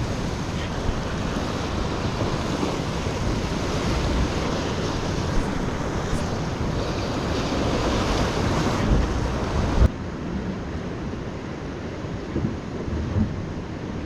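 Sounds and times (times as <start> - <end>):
wind buffeting microphone: 0.0 - 10.6
ocean surf washing against rocks: 0.0 - 14.0.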